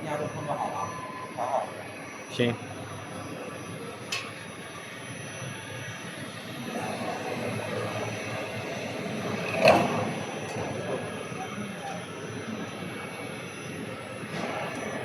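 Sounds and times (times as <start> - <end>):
mechanical workshop noise: 0.0 - 15.0.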